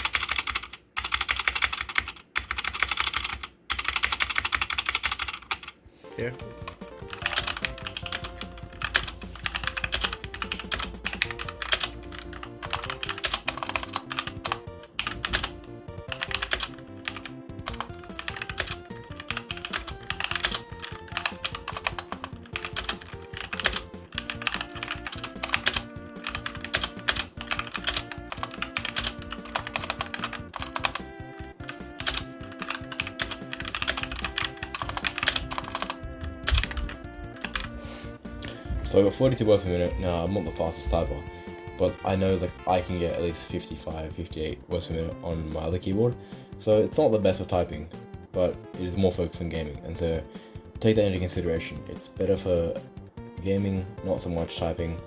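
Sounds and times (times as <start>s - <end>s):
mechanical keyboard typing: 0.0s - 5.8s, 6.6s - 37.8s
background music: 0.0s - 55.0s.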